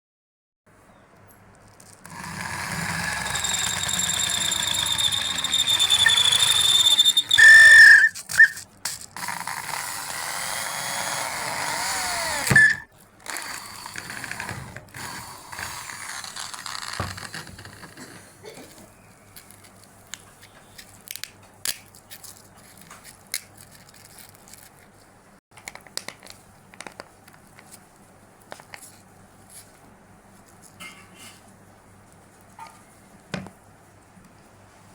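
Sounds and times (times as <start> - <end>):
drill grinder whining: 2.1 - 8.1, 9.5 - 17.5
loud squeal: 2.6 - 8.6, 12.3 - 12.9.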